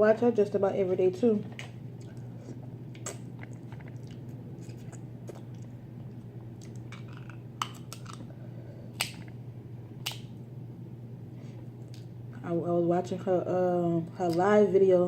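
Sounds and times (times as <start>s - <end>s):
crab shells cracking while eating: 3.0s - 8.3s, 8.9s - 9.4s, 10.0s - 10.4s.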